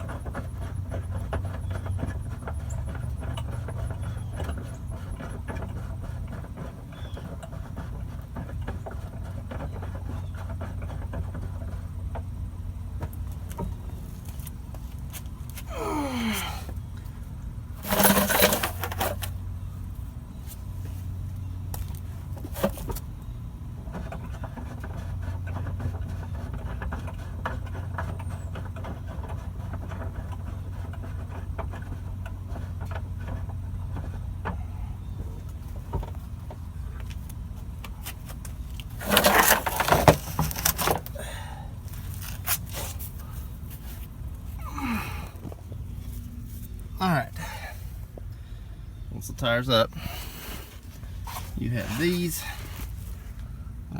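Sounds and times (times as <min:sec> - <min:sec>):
small ticks and scrapes: 0:00.0 - 0:15.7, 0:17.8 - 0:19.4, 0:20.4 - 0:41.2, 0:41.8 - 0:44.6, 0:45.4 - 0:47.0
winch clank: 0:17.8 - 0:19.3.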